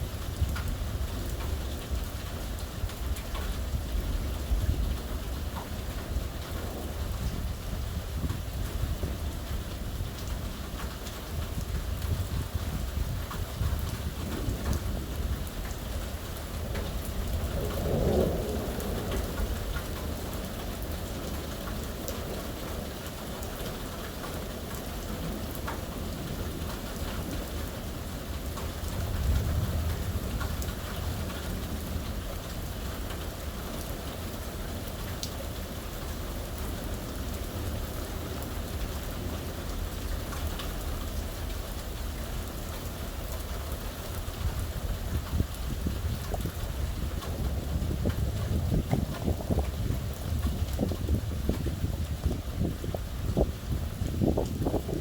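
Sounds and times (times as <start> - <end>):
rain pattering: 0.0 - 55.0
thunder rumbling: 11.4 - 22.8, 28.4 - 33.2, 44.2 - 55.0.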